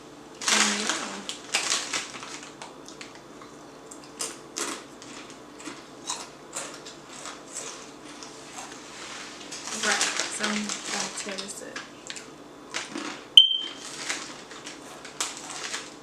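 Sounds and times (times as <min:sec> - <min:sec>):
snack crackles and clicks: 0:00.4 - 0:08.3.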